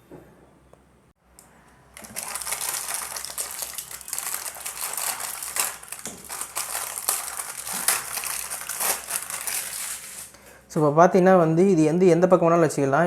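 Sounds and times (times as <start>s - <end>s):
packaging crinkling: 1.9s - 10.3s.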